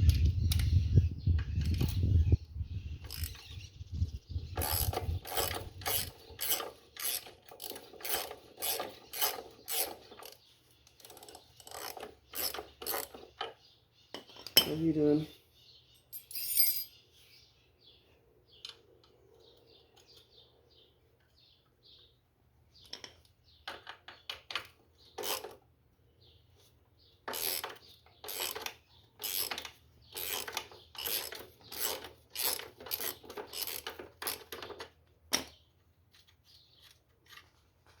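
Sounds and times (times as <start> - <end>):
small metal squeaks: 4.4 - 14.6, 27.2 - 35.0
ratchet strokes: 4.6 - 10.4, 27.3 - 34.6.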